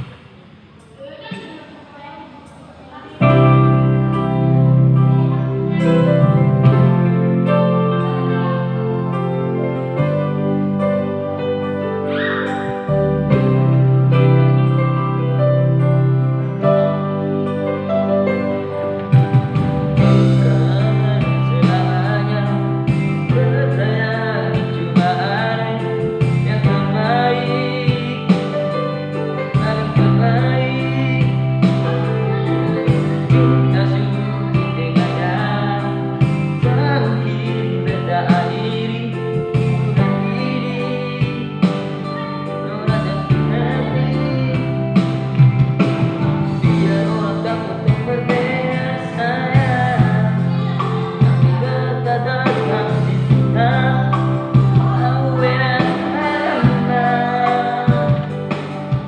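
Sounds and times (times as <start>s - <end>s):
instrumental backing track: 0.0s - 59.0s
man singing in high voice: 19.9s - 59.0s.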